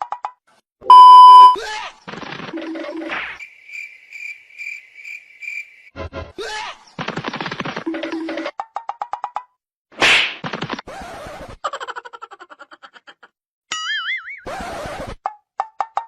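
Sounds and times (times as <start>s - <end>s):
loud steady beep tone: 0.9s - 1.6s.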